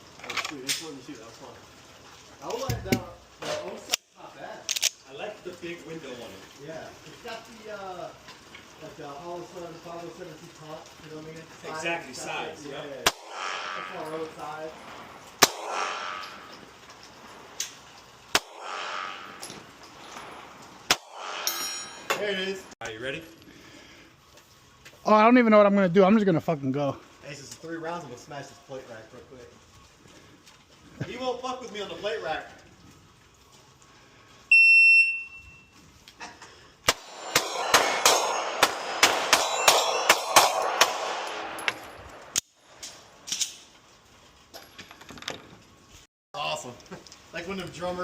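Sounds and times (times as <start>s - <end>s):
gunshots with rolling echo: 12.3s - 22.7s, 36.9s - 42.4s
faint gunshot crack: 13.0s - 14.7s, 15.4s - 16.8s, 18.3s - 20.3s, 36.9s - 42.4s
shot timer beep: 34.5s - 35.6s.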